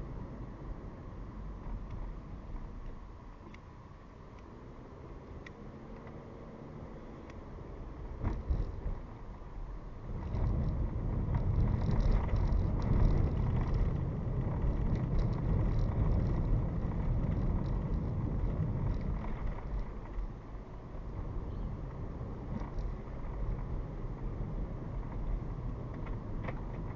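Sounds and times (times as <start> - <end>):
engine and tyre rumble: 0.0 - 26.9
small ticks and rattles: 10.2 - 20.3, 22.5 - 23.8.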